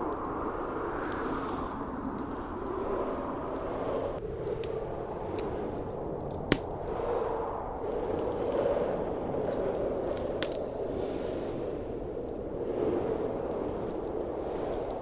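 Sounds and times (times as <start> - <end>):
blizzard wind: 0.0 - 15.0
wood fire crackling and popping: 0.0 - 15.0.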